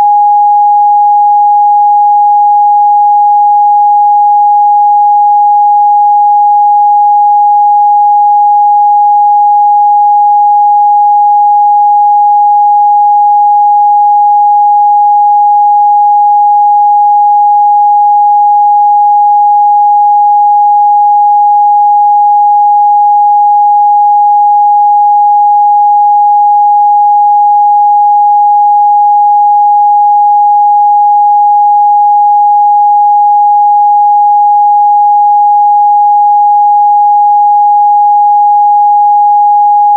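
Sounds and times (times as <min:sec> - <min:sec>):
sine test tone: 0:00.0 - 0:39.9.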